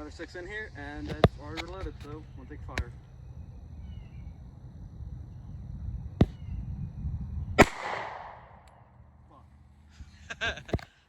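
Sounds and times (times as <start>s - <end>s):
pistol shots: 7.6s - 8.7s.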